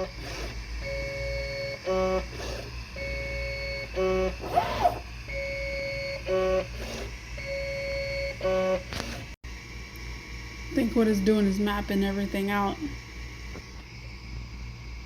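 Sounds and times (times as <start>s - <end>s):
stepper motors whining: 0.0s - 9.4s.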